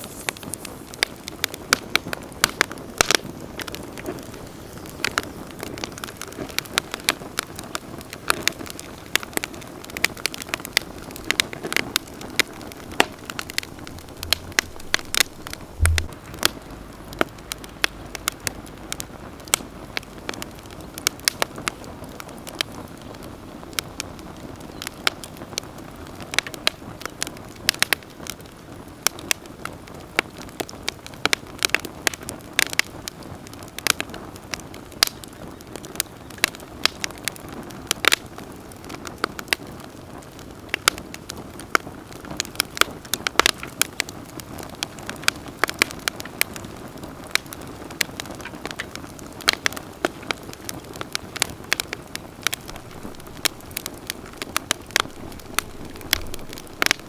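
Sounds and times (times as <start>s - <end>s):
campfire crackling and popping: 0.0s - 57.0s
soft low thud: 13.0s - 18.2s.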